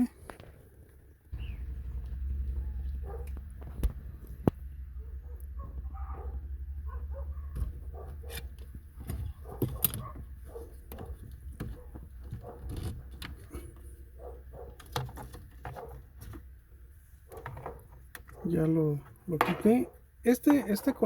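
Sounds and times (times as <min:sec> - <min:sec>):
low hum: 0:00.0 - 0:14.8.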